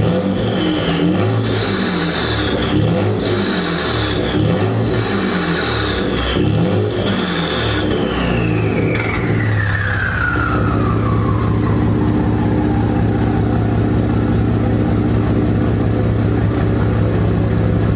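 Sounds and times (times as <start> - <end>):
engine idling: 0.0 - 17.9
turbo whistle falling in pitch: 0.2 - 4.6, 5.2 - 13.4.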